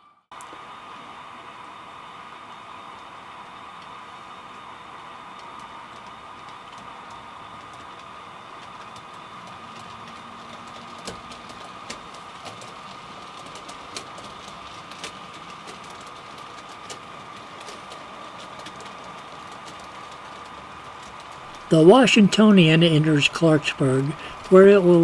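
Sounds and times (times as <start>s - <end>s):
wheels clicking over rail joints: 4.6s - 21.7s.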